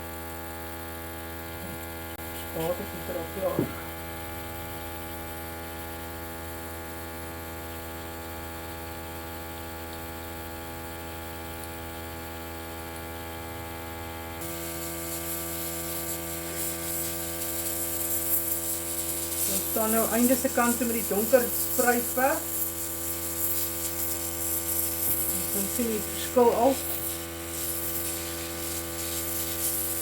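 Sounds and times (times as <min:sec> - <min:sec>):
compressor motor humming: 0:00.1 - 0:30.0
airbrush air hiss: 0:14.4 - 0:30.0.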